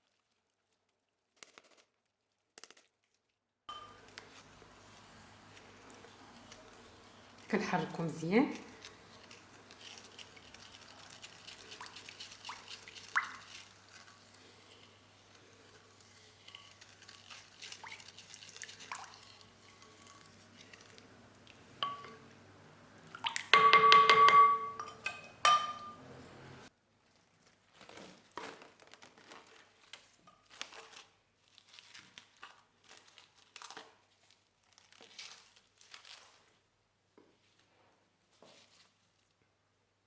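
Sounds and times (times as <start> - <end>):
utensil ringing against a bowl: 23.6 - 26.0.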